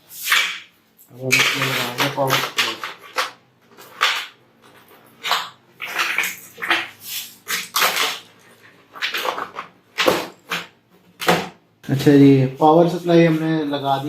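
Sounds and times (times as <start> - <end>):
metal parts scraping and rubbing: 0.0 - 3.1.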